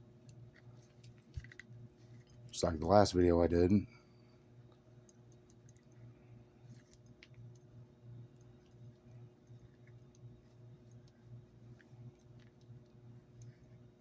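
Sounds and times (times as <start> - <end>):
low steady hum: 0.0 - 14.0
cord being handled clicks: 0.2 - 2.4, 6.7 - 7.7.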